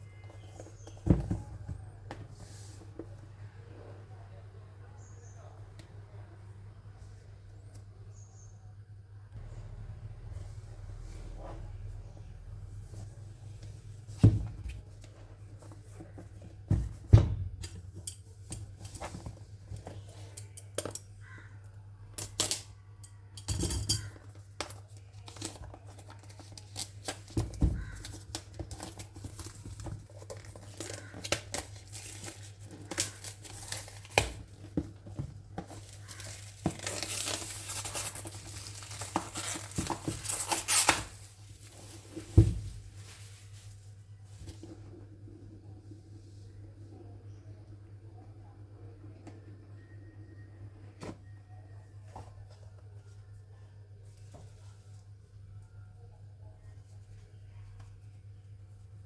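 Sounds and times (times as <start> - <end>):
wrapping rustling and crinkling: 24.8 - 44.6.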